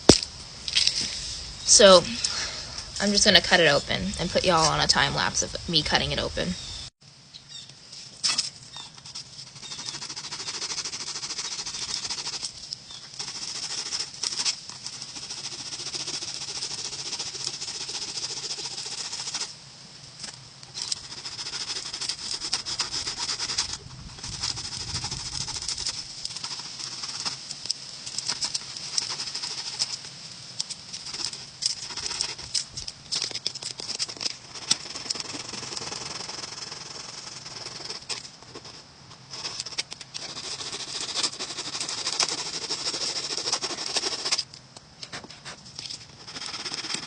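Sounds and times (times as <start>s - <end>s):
hand saw rasping through gourd shell: 9.0s - 19.5s, 20.8s - 27.4s, 33.2s - 38.7s, 39.3s - 44.5s, 46.2s - 47.0s.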